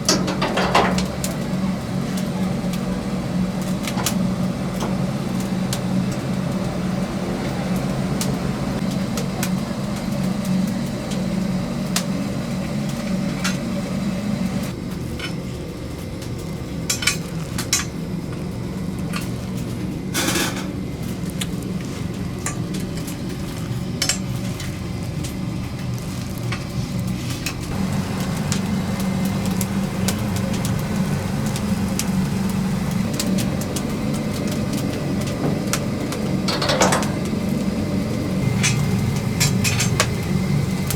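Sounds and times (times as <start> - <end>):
utensils and dishes clinking: 0.0 - 15.6, 27.3 - 40.9
low machine hum: 0.0 - 40.9.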